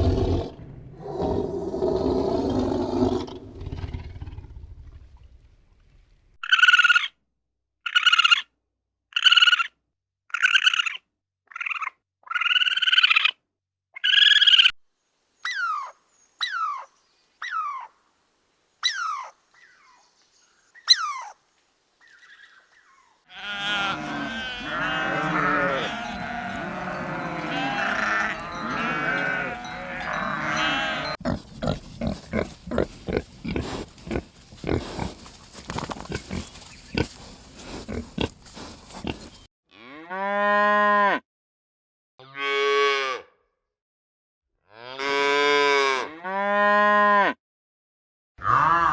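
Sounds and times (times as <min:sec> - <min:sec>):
cow mooing: 0:23.3 - 0:35.0
overlapping animal calls: 0:23.3 - 0:39.5.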